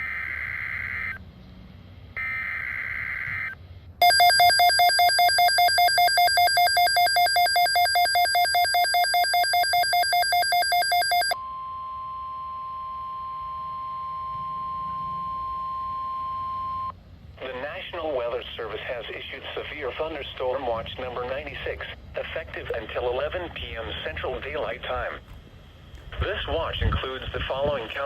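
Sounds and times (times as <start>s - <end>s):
electronic alarm beeping rapidly: 2.2s - 11.4s
steady single-pitch alert tone: 2.2s - 16.9s.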